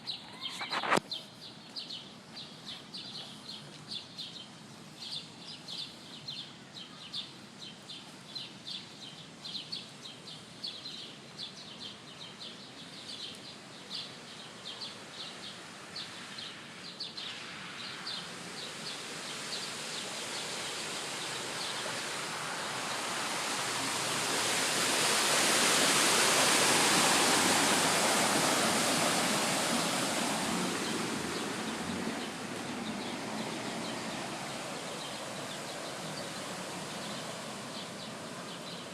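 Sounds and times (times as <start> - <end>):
outdoor hiss: 0.0 - 38.9
rushing noise: 17.4 - 38.6.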